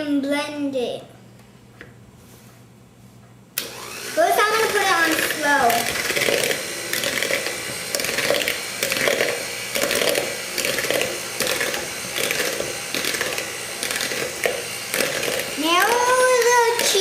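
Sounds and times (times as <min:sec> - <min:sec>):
electric blender churning: 0:03.6 - 0:17.0.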